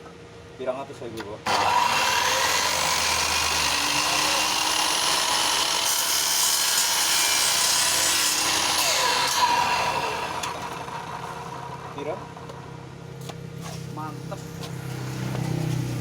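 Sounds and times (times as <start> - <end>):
miter saw cutting aluminium: 1.5 - 12.7.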